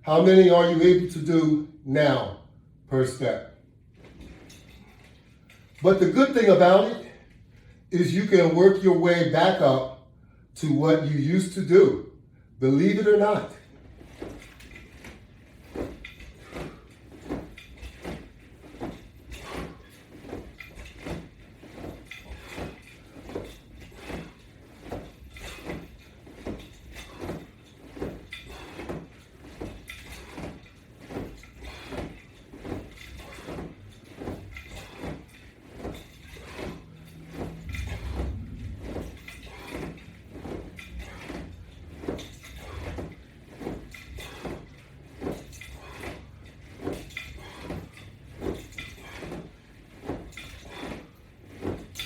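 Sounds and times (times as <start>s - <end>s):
exercise straps knocking and creaking: 3.1s - 9.8s, 12.7s - 52.0s
low hum: 35.8s - 44.3s.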